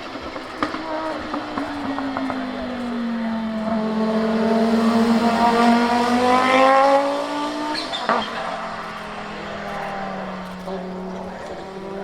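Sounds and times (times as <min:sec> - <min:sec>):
race car engine accelerating: 0:00.0 - 0:12.0.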